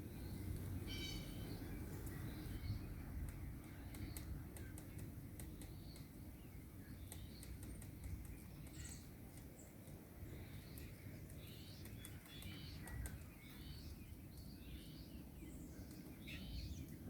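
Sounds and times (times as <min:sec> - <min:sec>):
faint high bird chirp: 0:00.2 - 0:17.0
woodpecker tapping on bark: 0:03.2 - 0:06.2, 0:06.9 - 0:14.5.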